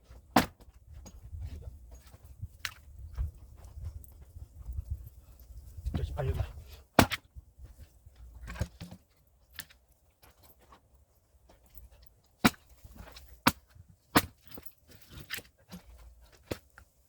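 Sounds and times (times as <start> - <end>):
axe blade cracking wood: 0.3 - 0.6, 7.0 - 7.3, 12.4 - 15.8.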